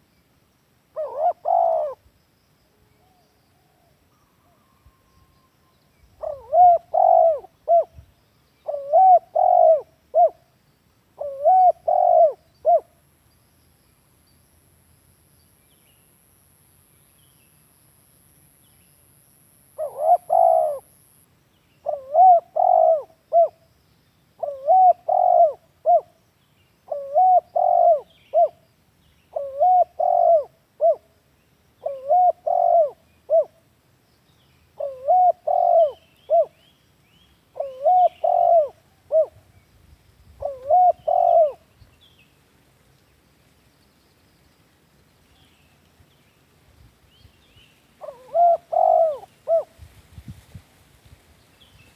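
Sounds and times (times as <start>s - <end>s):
dove cooing: 1.0s - 2.0s, 6.2s - 8.0s, 8.6s - 10.4s, 11.2s - 12.9s, 19.7s - 20.9s, 21.8s - 23.6s, 24.4s - 26.1s, 26.9s - 28.6s, 29.3s - 31.1s, 31.8s - 33.6s, 34.8s - 36.6s, 37.5s - 39.4s, 40.4s - 41.7s, 48.0s - 49.8s.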